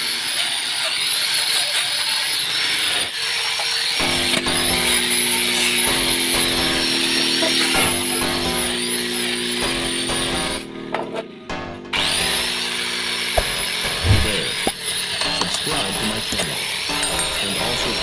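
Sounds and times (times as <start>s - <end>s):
power tool whining on metal: 0.0s - 18.0s
steady low hum: 4.0s - 18.0s.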